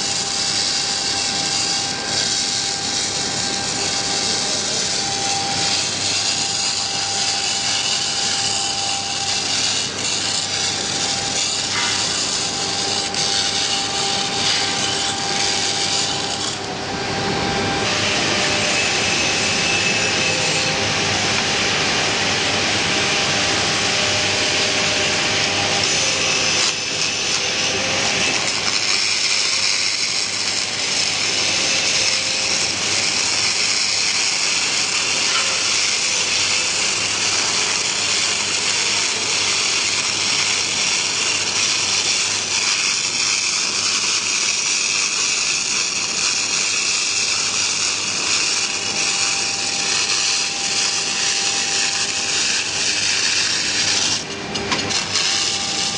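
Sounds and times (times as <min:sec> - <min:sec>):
welding arc crackling sizzle: 0:00.0 - 0:55.9.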